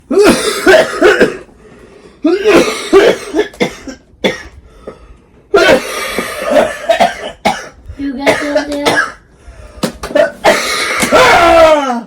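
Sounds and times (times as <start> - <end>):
person coughing: 0.1 - 1.5, 2.2 - 4.6, 5.5 - 9.2, 10.1 - 11.2.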